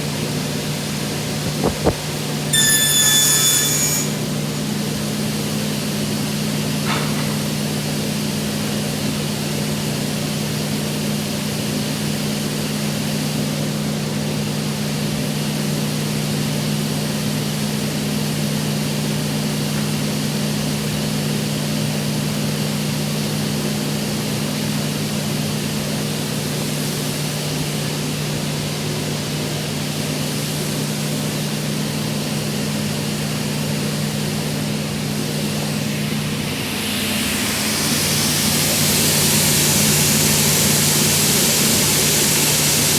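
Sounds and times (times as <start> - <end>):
table saw motor hum: 2.5 - 4.4
dust extraction air rushing: 34.6 - 42.9.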